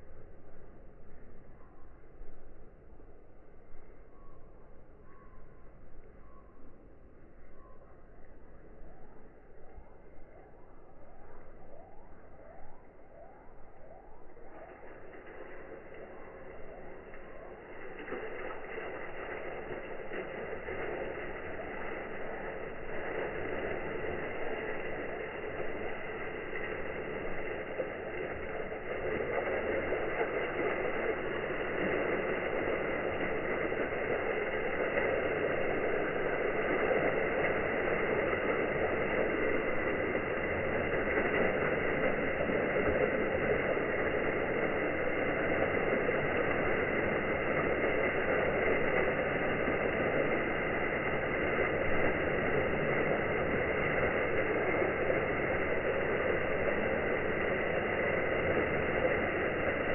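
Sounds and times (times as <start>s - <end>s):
water pouring over pond waterfall: 0.0s - 59.9s.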